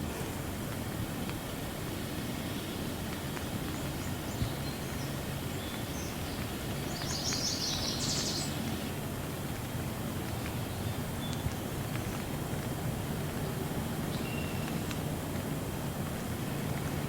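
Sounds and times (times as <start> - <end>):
steady rain falling: 0.0 - 17.0
bird chirping: 4.0 - 8.8.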